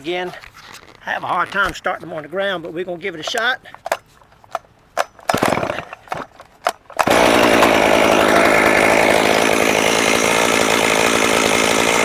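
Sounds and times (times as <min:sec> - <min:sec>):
starter cord pull: 0:03.3 - 0:08.0
chainsaw engine running: 0:05.4 - 0:05.9, 0:07.0 - 0:12.0.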